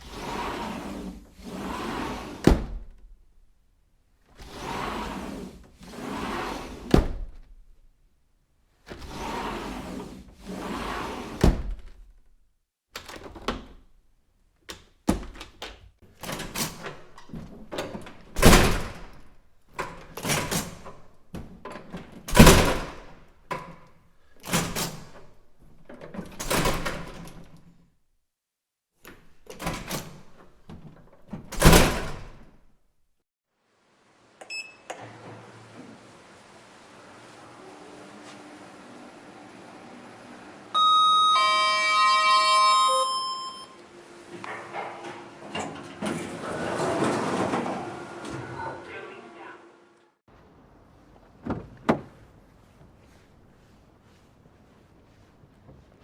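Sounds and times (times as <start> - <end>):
doors swinging and shutting: 0.1 - 3.2, 4.3 - 7.7, 8.8 - 12.3, 12.9 - 14.0, 14.6 - 27.7, 29.0 - 32.6, 44.3 - 48.6, 51.4 - 52.4.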